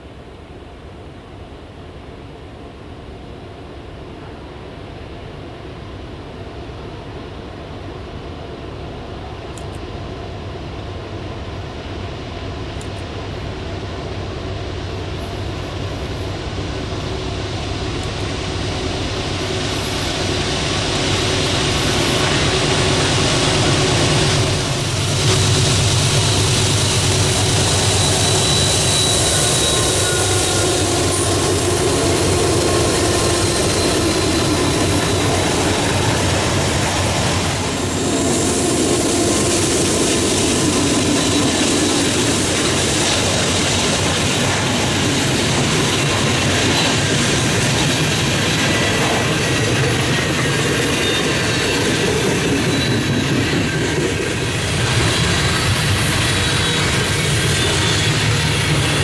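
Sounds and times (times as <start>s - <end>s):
freight train wheels rumbling: 0.0s - 59.0s
train wheel squeal: 13.4s - 18.0s, 18.6s - 59.0s.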